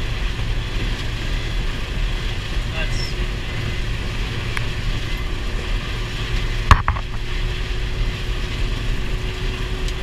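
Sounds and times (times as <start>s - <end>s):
combine harvester running: 0.0s - 10.0s
sharp knock: 6.7s - 7.2s.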